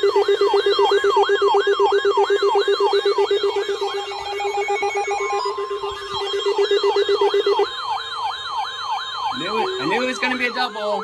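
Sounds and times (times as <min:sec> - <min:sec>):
rapid beeps: 0:02.4 - 0:11.0
fast-pulsing low tone: 0:09.2 - 0:10.7
rising whooping alert tone: 0:09.3 - 0:10.6.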